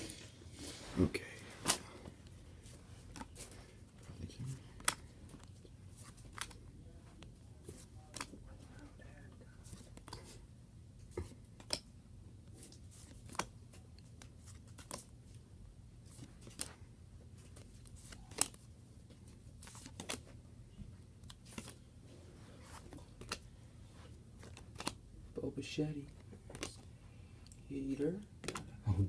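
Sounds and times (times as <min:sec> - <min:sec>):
steady low hum: 0:00.0 - 0:29.0
trading cards snapping: 0:04.8 - 0:06.6, 0:11.2 - 0:11.9, 0:13.0 - 0:13.5, 0:16.1 - 0:16.7, 0:18.0 - 0:18.6, 0:19.6 - 0:20.2, 0:23.2 - 0:23.5, 0:24.4 - 0:25.0, 0:26.5 - 0:26.8, 0:28.4 - 0:28.7.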